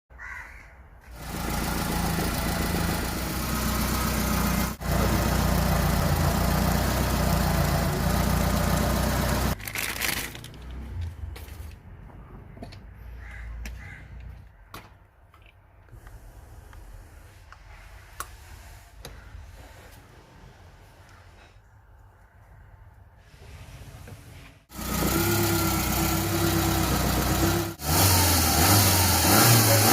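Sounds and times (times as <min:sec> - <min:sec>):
car engine misfiring: 0:01.1 - 0:09.6, 0:24.7 - 0:29.9.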